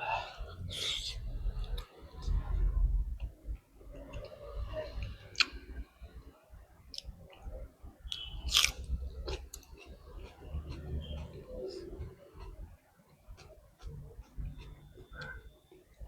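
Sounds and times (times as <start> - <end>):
person chewing food: 8.1 - 16.0.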